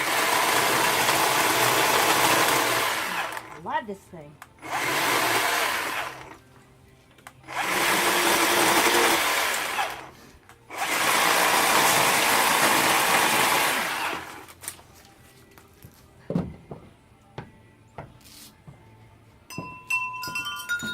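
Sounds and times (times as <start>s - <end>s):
electric chainsaw whirring: 0.0s - 3.6s, 4.6s - 6.4s, 7.4s - 14.6s.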